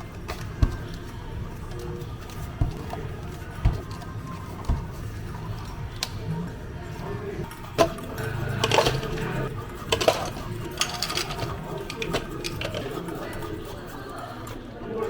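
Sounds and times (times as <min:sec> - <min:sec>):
cups and dishes clinking: 0:07.4 - 0:13.0.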